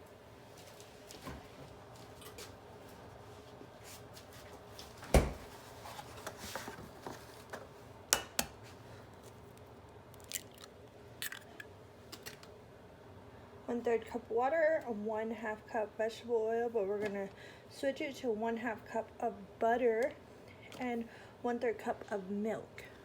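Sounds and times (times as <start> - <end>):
egg cracking against a bowl: 10.2 - 12.5.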